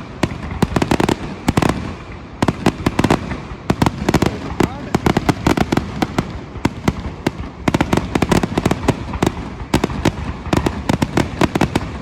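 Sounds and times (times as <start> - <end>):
fireworks bangs and cracks: 0.0 - 12.0.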